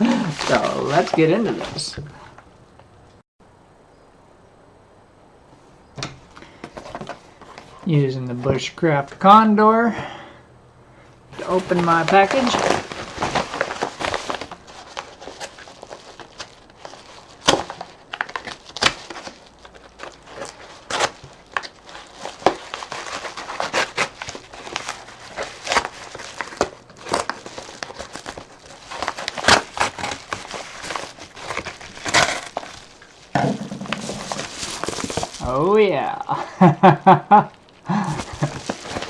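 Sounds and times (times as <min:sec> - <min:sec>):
knife slitting package: 0:11.8 - 0:35.5
package being torn open: 0:12.0 - 0:35.6, 0:37.5 - 0:39.0.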